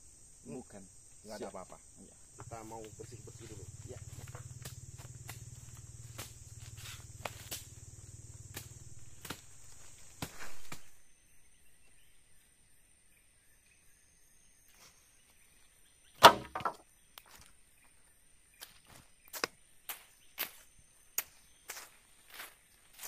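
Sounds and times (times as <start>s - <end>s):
steady high hiss: 0.0s - 11.9s.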